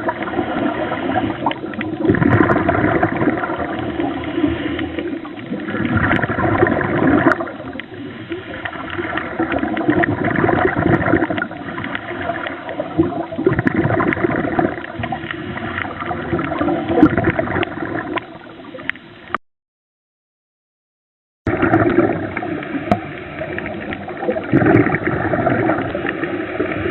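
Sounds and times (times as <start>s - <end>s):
underwater bubbling and gurgling: 0.0s - 19.4s, 21.5s - 26.9s.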